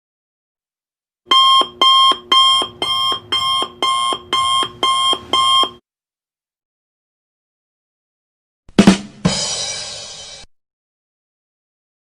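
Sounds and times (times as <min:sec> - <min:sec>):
electronic alarm beeping: 0:01.3 - 0:05.8.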